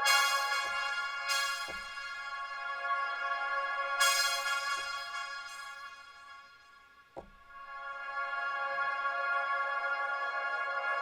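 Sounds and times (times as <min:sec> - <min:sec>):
synthesizer sustained chords: 0:00.0 - 0:06.8.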